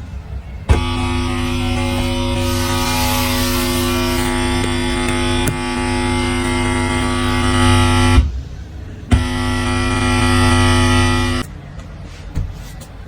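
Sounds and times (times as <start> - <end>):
loud electrical buzz: 0.7 - 8.3, 9.1 - 11.5.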